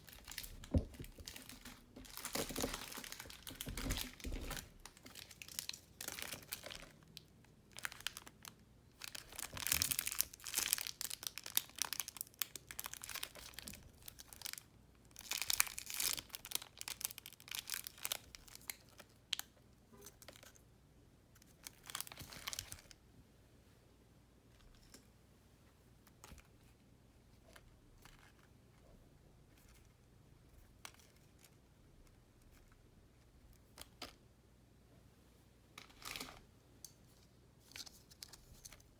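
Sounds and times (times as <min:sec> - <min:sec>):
plastic packaging crinkling: 0:00.0 - 0:07.0, 0:07.8 - 0:18.6.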